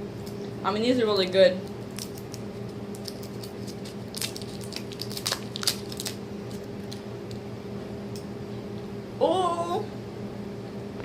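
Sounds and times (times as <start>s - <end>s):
steady low hum: 0.0s - 11.0s
person chewing candy: 1.9s - 7.0s.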